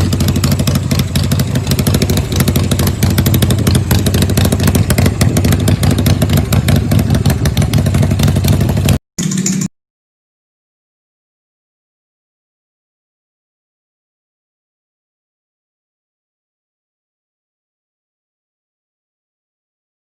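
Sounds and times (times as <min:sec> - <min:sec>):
motorcycle engine running: 0:00.0 - 0:09.7.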